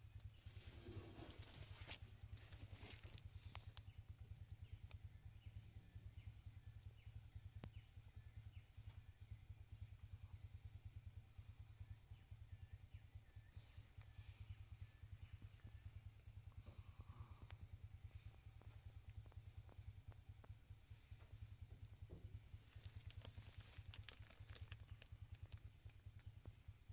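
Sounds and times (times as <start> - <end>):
small chirps: 0.0 - 5.6, 13.2 - 26.6
high insect drone: 0.0 - 26.9.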